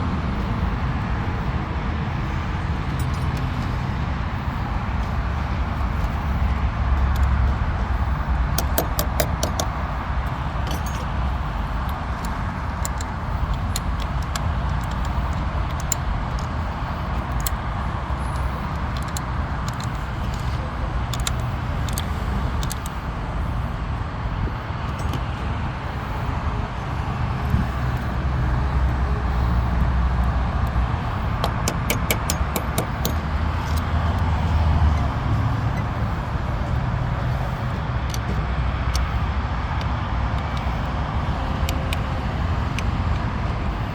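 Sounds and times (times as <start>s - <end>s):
hand tools clinking: 2.9s - 3.9s, 8.6s - 16.5s, 31.0s - 36.1s.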